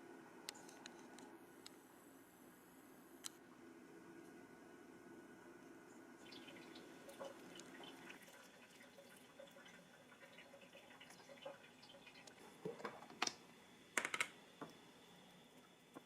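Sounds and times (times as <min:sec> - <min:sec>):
kitchen work clicks and taps: 0:14.0 - 0:14.8.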